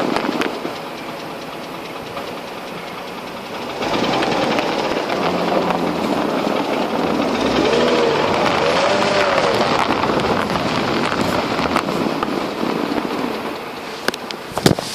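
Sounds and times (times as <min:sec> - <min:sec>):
engine running with a knock: 0:00.0 - 0:14.9
sharp clicks: 0:00.0 - 0:14.9
rising and falling tone: 0:03.5 - 0:12.6.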